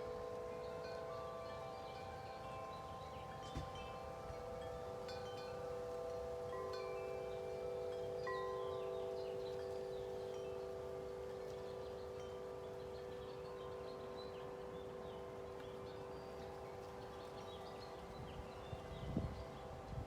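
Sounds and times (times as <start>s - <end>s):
wind chimes ringing: 0.0s - 20.0s.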